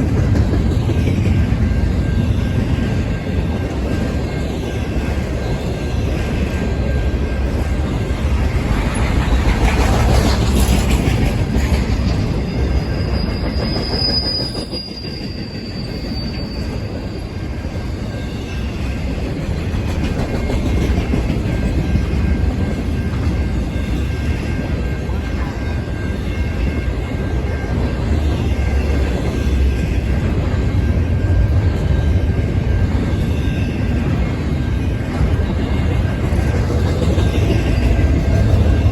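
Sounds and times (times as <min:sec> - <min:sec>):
freight train rumbling past: 0:00.0 - 0:38.9
high wheel squeal: 0:12.1 - 0:17.6.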